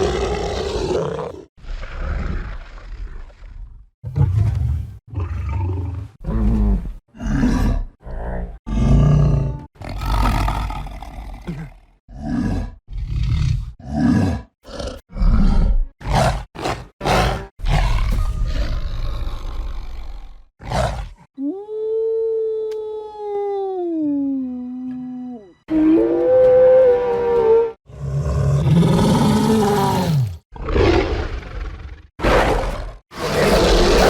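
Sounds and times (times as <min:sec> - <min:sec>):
creature roars and growls: 0:00.0 - 0:03.5, 0:25.7 - 0:34.0.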